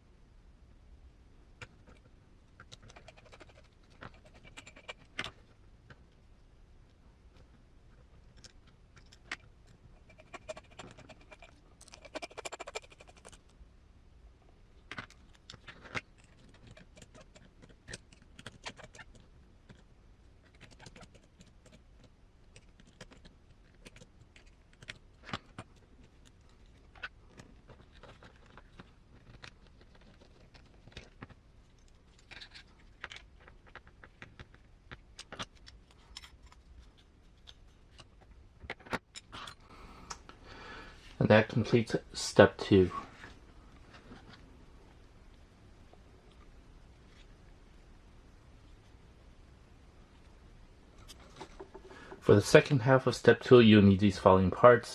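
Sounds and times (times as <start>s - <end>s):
small parts and tools clicking: 1.6s - 5.4s, 8.2s - 13.5s, 14.9s - 39.6s.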